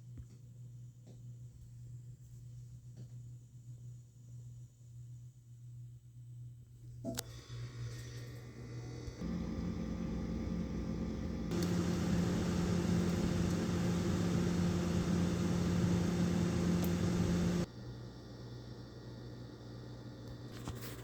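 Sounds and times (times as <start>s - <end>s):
electric appliance humming: 9.1s - 17.7s.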